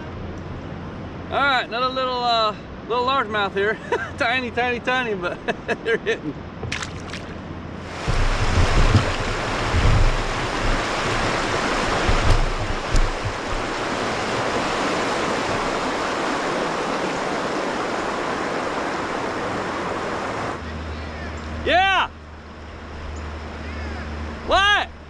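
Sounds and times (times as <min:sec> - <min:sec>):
river water rushing: 0:06.7 - 0:25.0
low thumps: 0:07.9 - 0:16.0.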